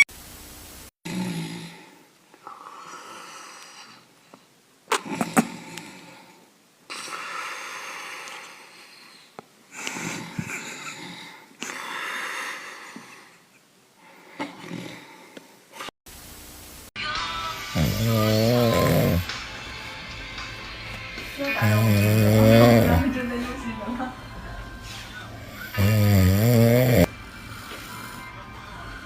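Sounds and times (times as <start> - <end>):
person snoring: 1.0 - 4.1, 4.9 - 13.4, 14.4 - 15.9, 17.7 - 19.3, 21.4 - 23.2, 24.7 - 29.0
sharp snort: 4.9 - 6.1, 17.8 - 19.3.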